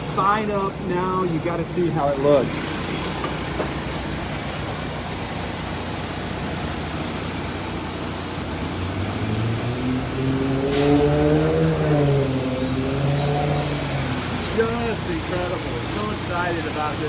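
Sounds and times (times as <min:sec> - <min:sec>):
traffic hum: 0:00.0 - 0:17.0
engine revving: 0:02.0 - 0:17.0
short hiss: 0:10.6 - 0:11.2.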